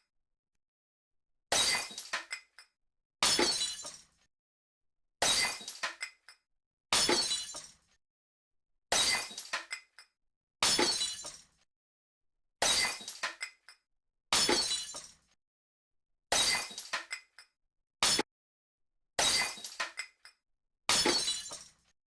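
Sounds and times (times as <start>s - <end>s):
glass smashing: 1.5s - 2.3s, 3.2s - 4.0s, 5.2s - 6.0s, 7.0s - 7.8s, 8.9s - 9.7s, 10.6s - 11.4s, 12.6s - 13.5s, 14.3s - 15.2s, 16.3s - 17.2s, 19.2s - 20.1s, 20.9s - 21.8s
falling glass shards clinking: 14.4s - 15.2s, 16.4s - 17.2s, 21.0s - 21.8s.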